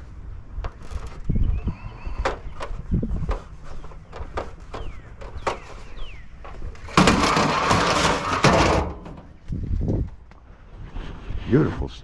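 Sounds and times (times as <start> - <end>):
loud scraping rattle: 0.6 - 9.4
scrap metal knocks and clanks: 2.2 - 9.4.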